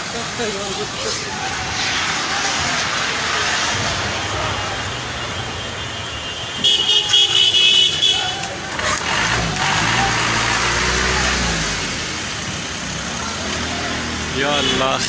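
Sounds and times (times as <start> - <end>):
rushing background noise: 0.0 - 15.0
vehicle engine humming: 0.0 - 15.0
vehicle horn toots: 5.5 - 10.0, 14.4 - 15.0.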